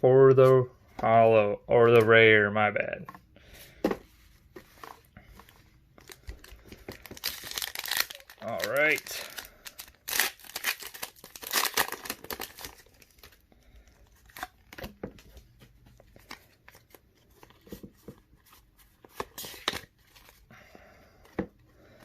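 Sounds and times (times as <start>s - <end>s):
foil wrapper tearing and crinkling: 6.0s - 14.8s.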